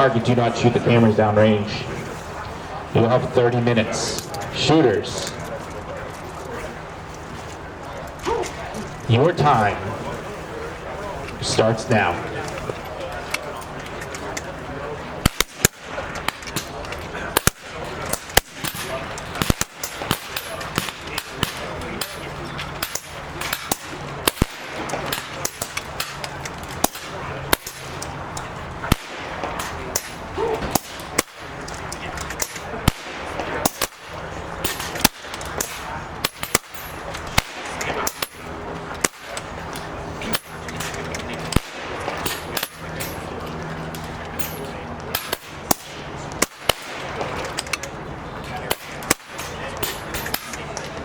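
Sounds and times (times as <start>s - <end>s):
murmur of voices: 0.0s - 51.0s
air rifle shots cracking: 15.2s - 43.3s, 44.4s - 47.6s, 48.6s - 50.8s.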